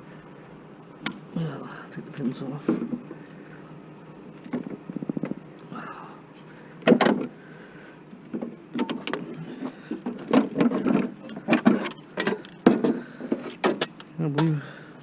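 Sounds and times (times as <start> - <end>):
hand tools clicking and knocking on metal: 9.9 - 14.6.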